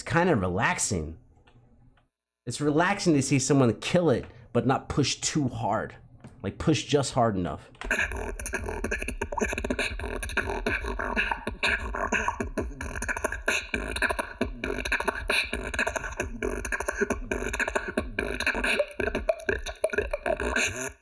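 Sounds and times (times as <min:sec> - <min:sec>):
person beatboxing: 0:07.8 - 0:21.0.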